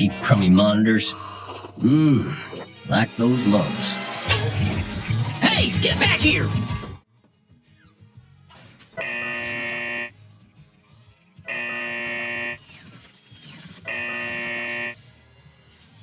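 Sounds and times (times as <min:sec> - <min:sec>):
harsh buzzy data bursts: 0:09.0 - 0:10.1, 0:11.5 - 0:15.0.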